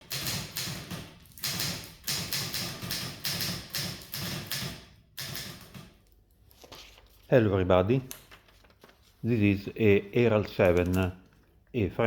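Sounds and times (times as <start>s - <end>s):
manual typewriter keystrokes: 0.0s - 6.0s, 10.5s - 11.1s.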